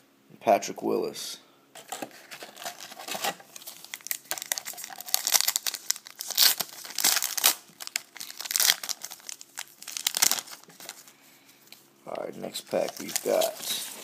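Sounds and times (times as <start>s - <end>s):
wrapper crinkling and tearing: 1.8s - 11.1s, 12.5s - 14.0s.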